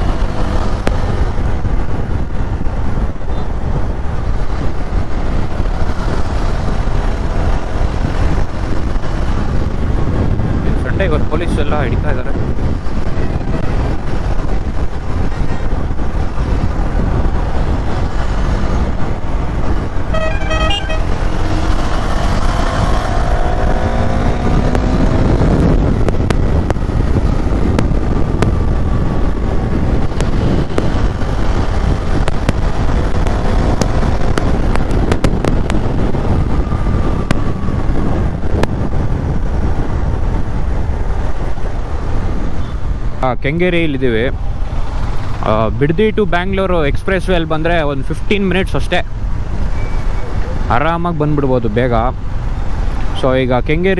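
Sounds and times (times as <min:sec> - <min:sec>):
engine noise: 0:00.0 - 0:53.9
passing vehicles: 0:00.0 - 0:53.9
tyre noise on road: 0:00.0 - 0:53.9
wind noise on microphone: 0:00.0 - 0:53.9
vehicle horn short beeps: 0:20.1 - 0:21.1.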